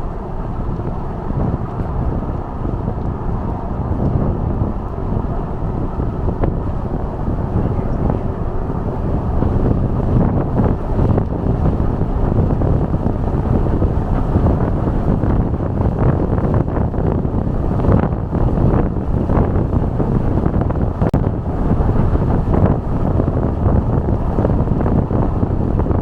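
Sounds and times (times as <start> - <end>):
truck road and wind noise: 0.0 - 26.0
wind buffeting microphone: 0.0 - 26.0.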